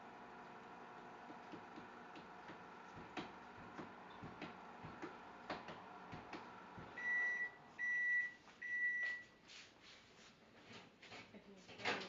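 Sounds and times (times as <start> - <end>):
microwave oven beeping: 0.0 - 9.3.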